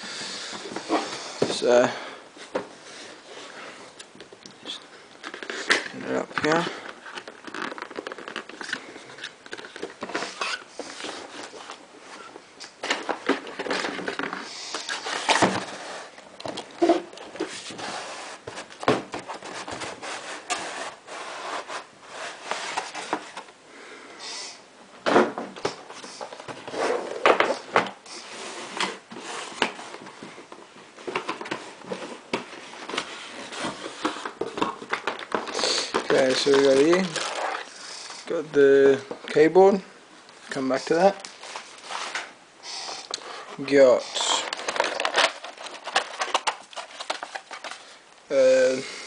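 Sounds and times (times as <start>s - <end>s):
cardboard rubbing and scraping: 16.8s - 23.4s.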